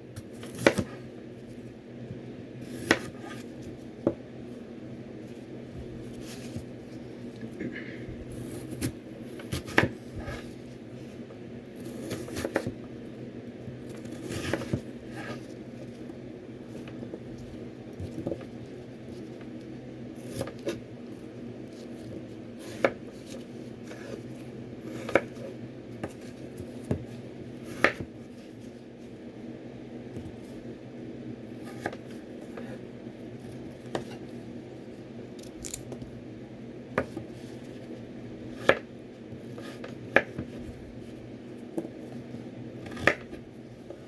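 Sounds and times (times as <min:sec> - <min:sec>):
steady low hum: 0:00.0 - 0:44.0.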